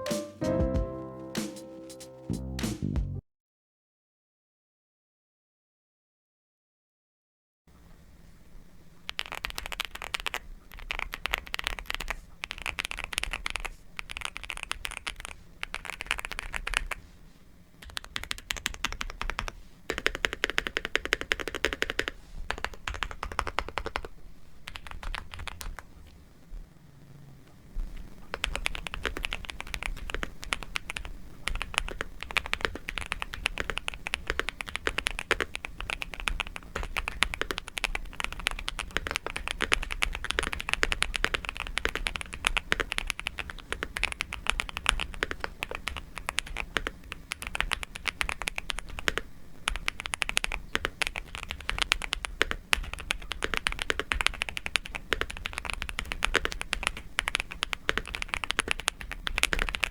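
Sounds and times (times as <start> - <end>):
mechanical keyboard typing: 9.1 - 17.0, 17.8 - 24.1, 24.7 - 25.9, 28.3 - 59.9.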